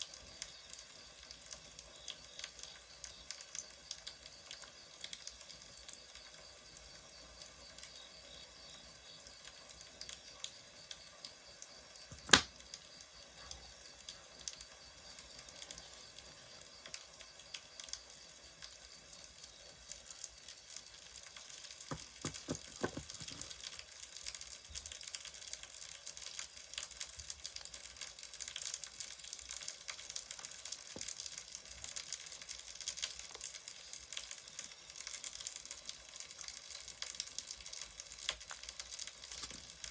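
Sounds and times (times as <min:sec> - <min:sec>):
wood fire crackling: 0:00.0 - 0:39.9
loud snap of fire: 0:11.6 - 0:18.8
soft knocks: 0:21.9 - 0:23.4.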